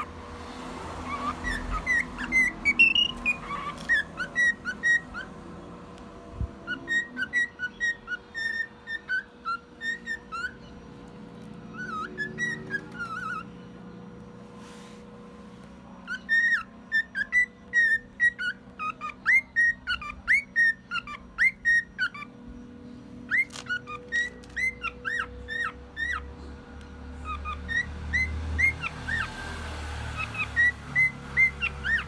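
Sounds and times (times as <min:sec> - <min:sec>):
cockatiel whistling chirps: 0:01.0 - 0:05.3, 0:06.6 - 0:10.7, 0:11.7 - 0:13.5, 0:16.1 - 0:22.3, 0:23.3 - 0:26.3, 0:27.2 - 0:29.4, 0:30.2 - 0:32.0.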